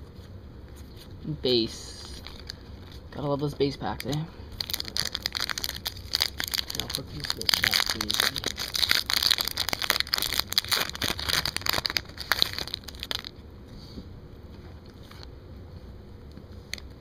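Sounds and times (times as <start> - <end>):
foil wrappers crinkling: 2.0 - 13.4.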